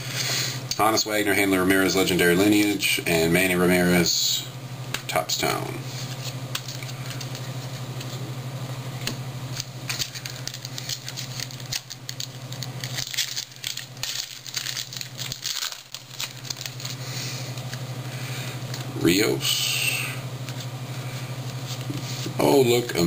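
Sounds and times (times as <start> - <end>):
low electrical hum: 0.0 - 23.0
cards being flipped through: 5.9 - 8.2, 9.0 - 17.9.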